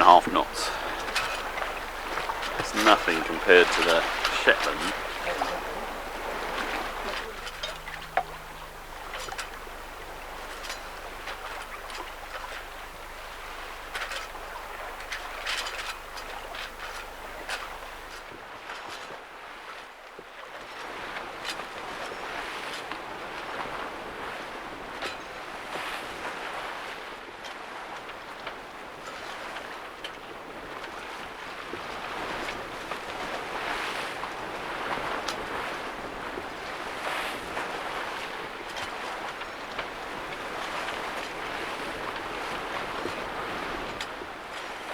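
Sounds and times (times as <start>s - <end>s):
water rushing past hull: 0.0s - 18.2s
wind: 0.0s - 44.9s.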